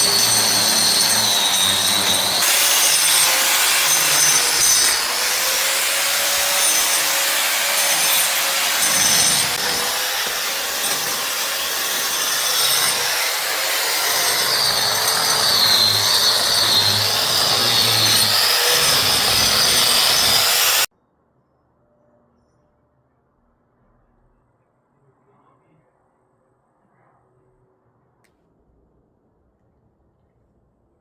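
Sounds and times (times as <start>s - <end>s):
saw rasping through wood: 0.0s - 20.9s.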